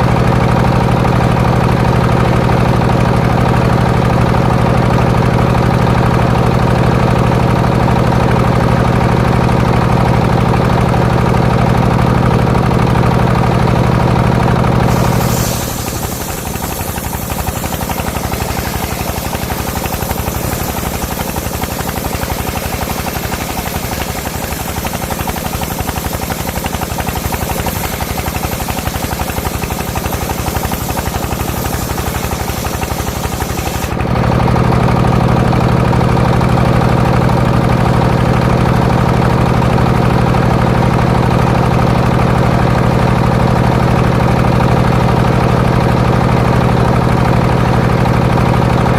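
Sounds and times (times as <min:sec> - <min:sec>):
sawmill engine hum: 0:00.0 - 0:48.9
saw blade cutting wood: 0:14.8 - 0:34.0.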